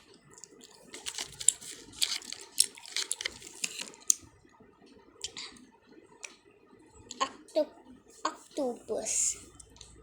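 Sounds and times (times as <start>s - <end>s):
candy being eaten: 0.3s - 4.2s.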